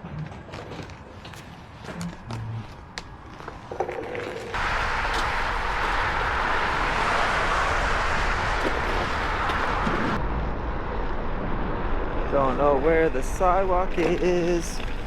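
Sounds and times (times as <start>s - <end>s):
board rushing through snow: 4.5s - 10.3s.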